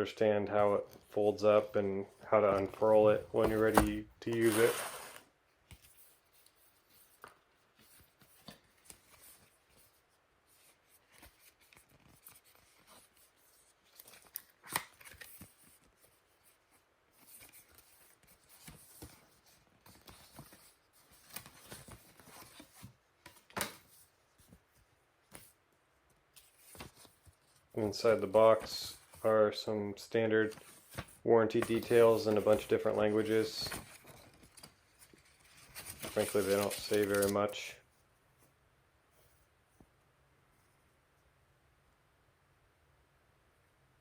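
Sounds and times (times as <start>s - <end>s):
cardboard packaging rustling: 2.3s - 24.7s, 30.4s - 37.6s.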